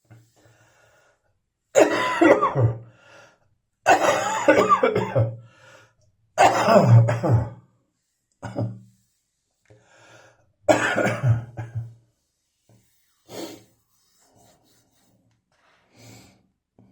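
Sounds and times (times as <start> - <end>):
person coughing: 1.8 - 2.8, 3.9 - 5.3, 6.4 - 7.6, 8.4 - 8.7, 10.7 - 11.9.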